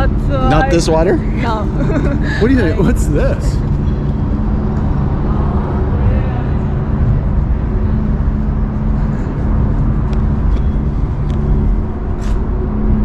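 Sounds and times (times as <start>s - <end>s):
low machine hum: 0.0s - 13.0s.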